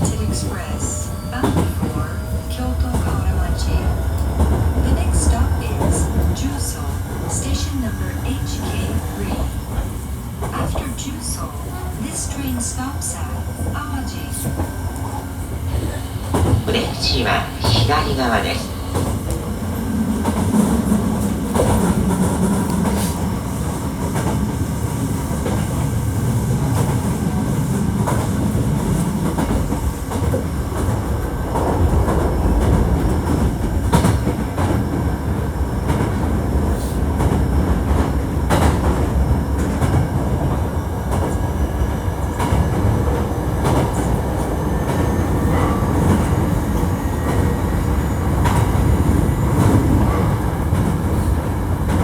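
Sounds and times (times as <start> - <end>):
train wheel and track rumble: 0.0 - 52.0.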